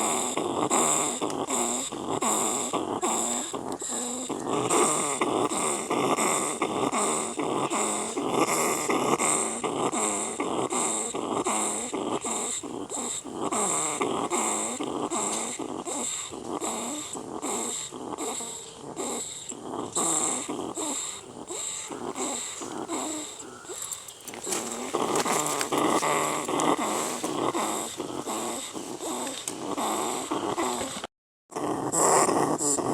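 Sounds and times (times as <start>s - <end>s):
rat growling and hissing: 0.0s - 32.9s.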